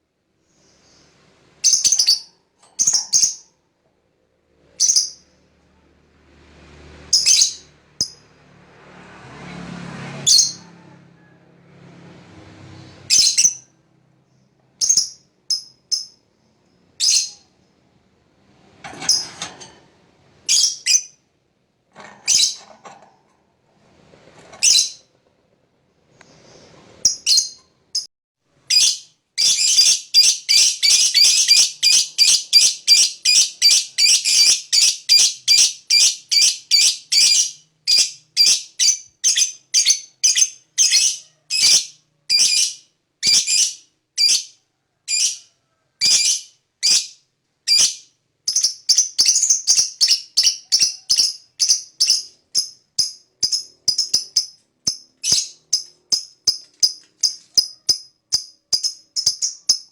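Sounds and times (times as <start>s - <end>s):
lovebird shrill chattering calls: 28.7s - 44.5s.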